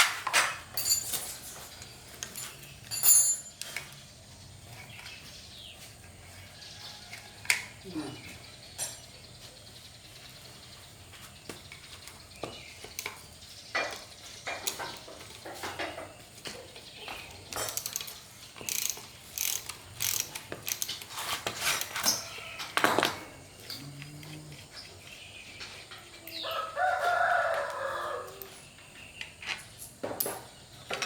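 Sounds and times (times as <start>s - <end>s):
hand tools clicking on metal: 12.8s - 24.7s.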